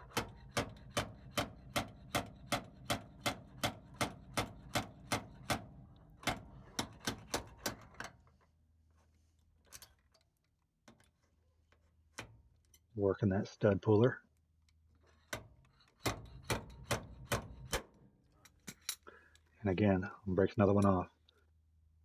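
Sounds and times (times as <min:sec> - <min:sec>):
hammer tapping on sheet metal: 0:00.1 - 0:07.8, 0:16.0 - 0:17.9.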